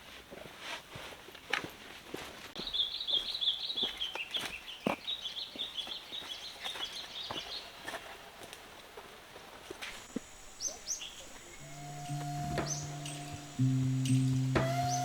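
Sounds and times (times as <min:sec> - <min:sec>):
bird chattering trill: 0:10.4 - 0:15.0.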